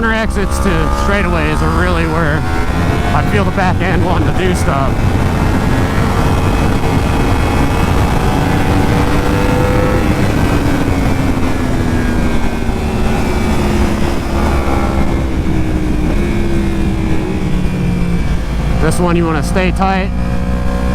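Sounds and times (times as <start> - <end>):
motorcycle engine accelerating: 0.0 - 20.9
wind and road noise: 0.0 - 20.9.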